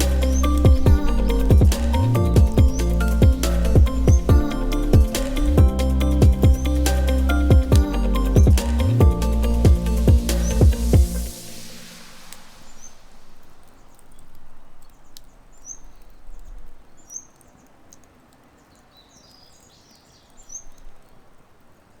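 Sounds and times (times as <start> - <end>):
small bird chirping: 0.0 - 4.6, 13.7 - 17.7
faint clicks: 12.3 - 21.8.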